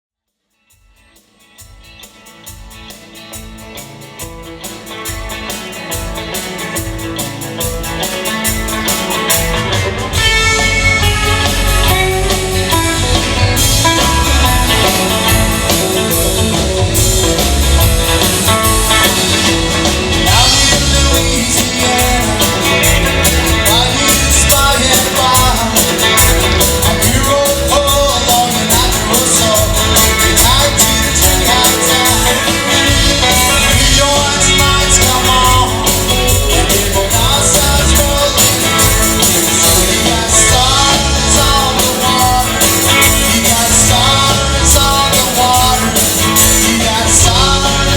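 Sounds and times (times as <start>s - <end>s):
song with guitar and singing: 1.1s - 47.9s.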